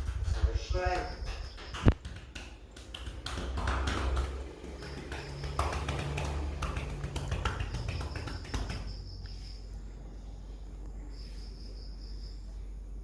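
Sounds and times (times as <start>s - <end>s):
hands tapping on a body: 0.0s - 9.0s
sharp slap: 0.0s - 9.0s.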